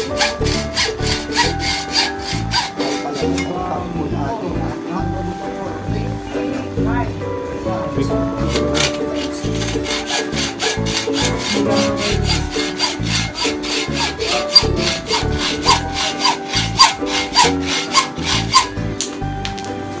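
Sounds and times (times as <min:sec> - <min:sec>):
saw cutting through metal tube: 0:00.0 - 0:03.8, 0:08.4 - 0:18.9
background music with bass line: 0:00.0 - 0:20.0.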